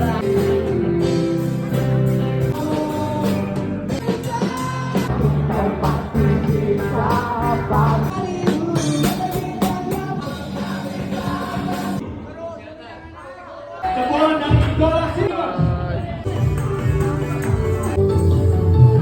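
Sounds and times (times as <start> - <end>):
rock song with singing and guitar: 0.0 - 12.2.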